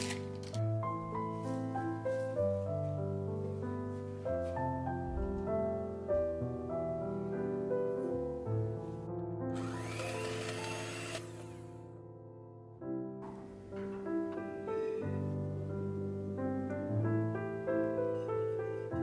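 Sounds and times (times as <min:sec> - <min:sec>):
gentle piano music: 0:00.0 - 0:19.0
whirring rising in pitch: 0:09.6 - 0:11.6.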